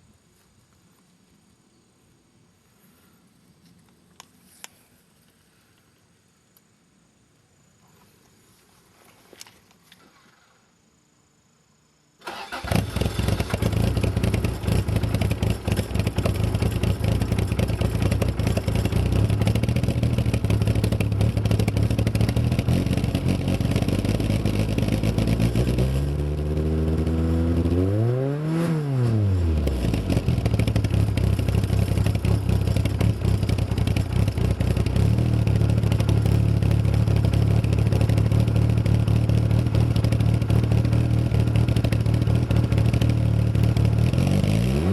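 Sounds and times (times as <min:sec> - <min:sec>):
car engine starting and idling: 0:12.2 - 0:27.8, 0:29.5 - 0:44.9
engine revving: 0:12.2 - 0:44.9.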